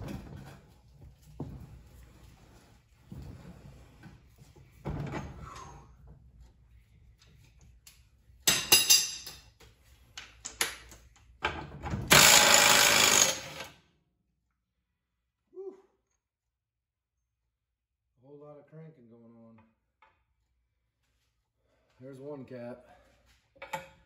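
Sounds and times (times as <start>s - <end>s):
impact wrench hammering: 12.1s - 13.7s.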